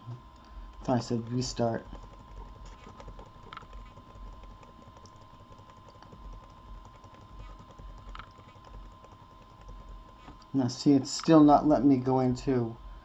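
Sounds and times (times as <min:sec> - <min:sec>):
laptop keys tapping: 0:00.4 - 0:10.6.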